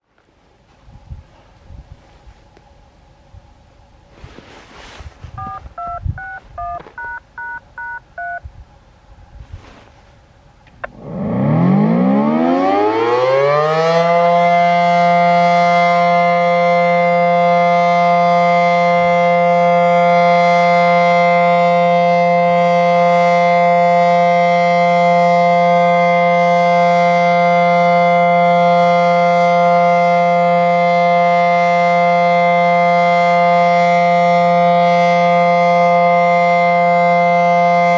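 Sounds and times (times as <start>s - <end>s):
touch-tone beeps: 5.4s - 8.4s
warning siren winding up: 10.8s - 37.9s.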